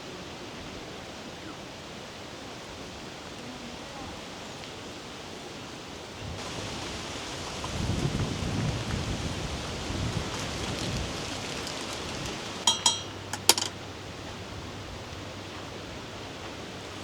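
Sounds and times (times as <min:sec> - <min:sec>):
wind noise: 0:06.2 - 0:13.6
tableware clinking: 0:12.6 - 0:13.8.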